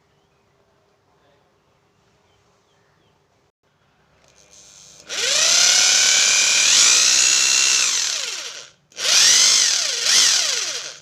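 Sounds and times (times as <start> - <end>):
hammer drill motor whining: 4.2 - 11.0.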